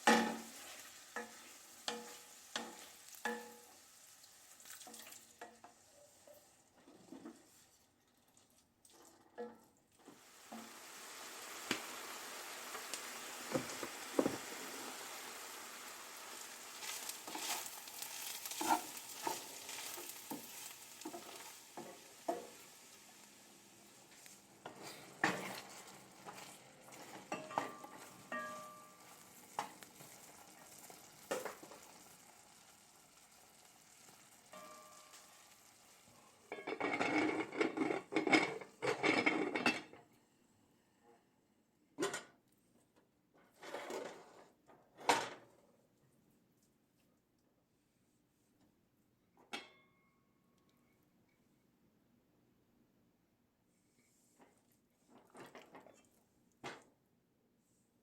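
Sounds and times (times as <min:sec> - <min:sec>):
food sizzling in a pan: 0:00.0 - 0:07.7, 0:10.0 - 0:39.4.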